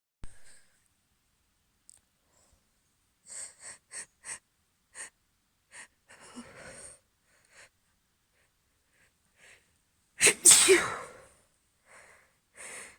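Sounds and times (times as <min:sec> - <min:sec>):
woman sniffing: 0:10.2 - 0:11.2.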